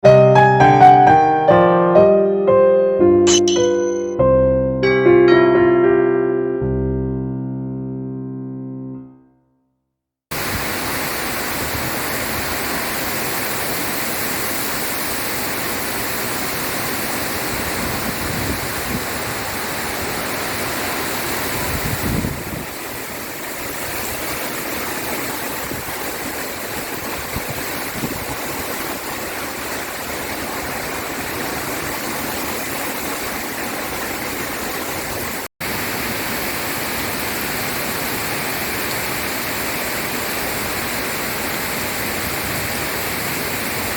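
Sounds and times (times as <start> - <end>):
heavy rain pouring: 10.3 - 43.9.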